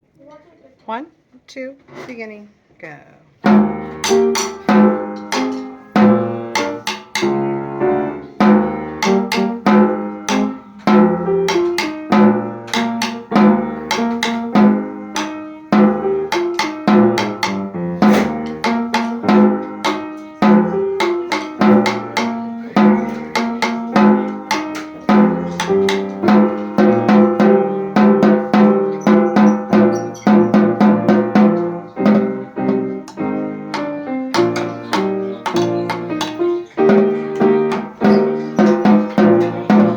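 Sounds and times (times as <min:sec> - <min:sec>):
snare drum strikes: 0:03.4 - 0:39.9.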